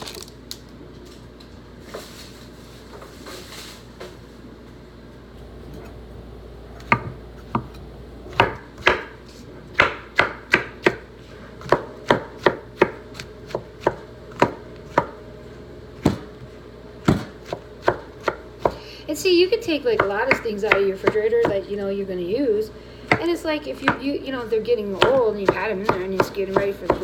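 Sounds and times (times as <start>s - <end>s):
knife chopping on cutting board: 6.8s - 15.2s, 16.0s - 16.3s, 17.0s - 18.8s, 25.0s - 27.0s.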